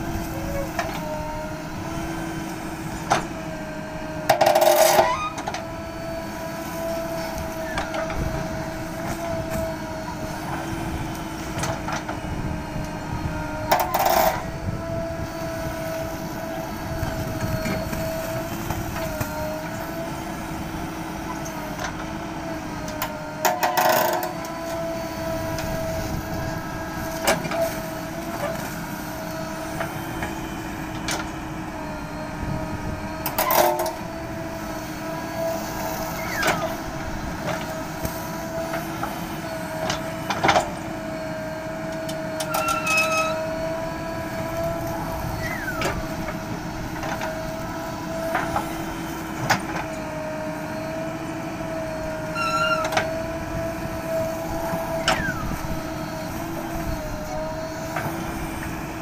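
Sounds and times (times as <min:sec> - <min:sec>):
diesel engine whining: 0:00.0 - 0:59.0.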